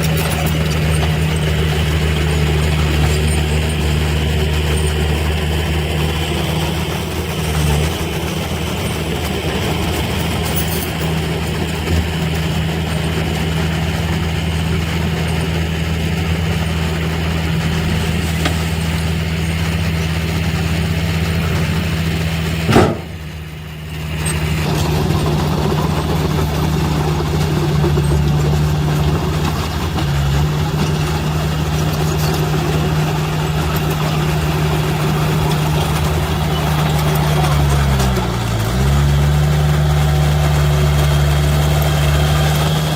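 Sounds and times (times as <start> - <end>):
diesel engine running: 0.0 - 42.9.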